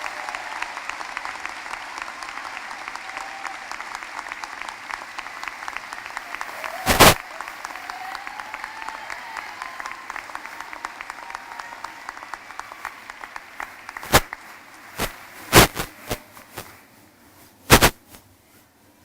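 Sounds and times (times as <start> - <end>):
audience applause: 0.0 - 17.0
loud sharp thumps: 6.9 - 7.2, 17.7 - 18.0.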